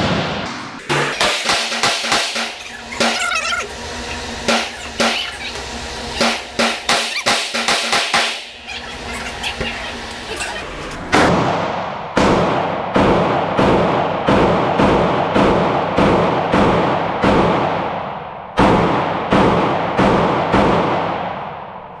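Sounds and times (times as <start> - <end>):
pistol shots with echo: 11.2 - 21.7.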